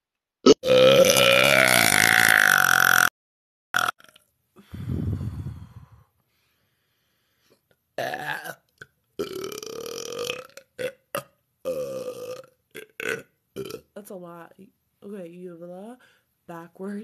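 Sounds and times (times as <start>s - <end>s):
woman burping: 0.5s - 3.1s, 8.0s - 8.6s.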